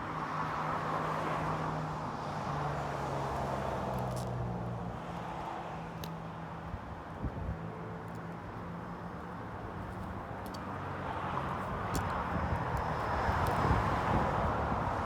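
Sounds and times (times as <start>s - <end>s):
traffic noise: 0.0s - 15.0s
wind: 0.0s - 15.0s.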